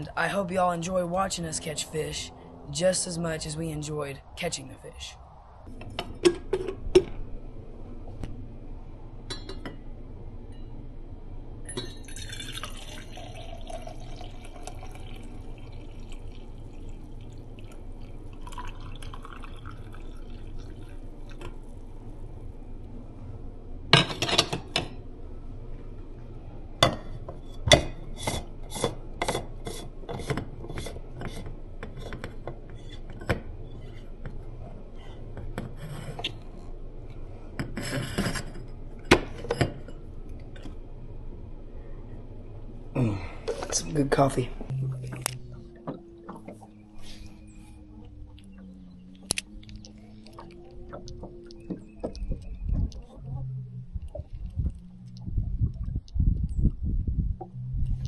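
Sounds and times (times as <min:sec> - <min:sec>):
coffee pouring into a cup: 0:11.8 - 0:21.8.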